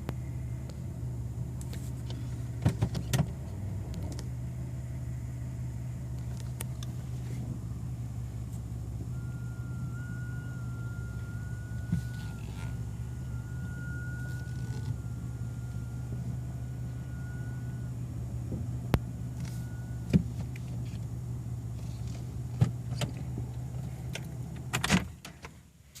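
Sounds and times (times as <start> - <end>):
car engine idling: 0.0 - 26.0
high-pitched whine: 6.7 - 20.2.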